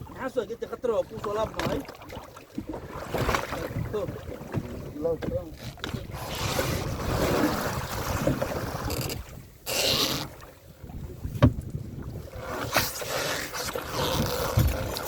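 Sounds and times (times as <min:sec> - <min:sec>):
sea water washing against boat: 0:00.0 - 0:15.0
knock on boat: 0:01.6 - 0:01.9, 0:04.5 - 0:06.0, 0:11.3 - 0:11.7
wind buffeting microphone: 0:02.6 - 0:09.6, 0:10.6 - 0:12.6.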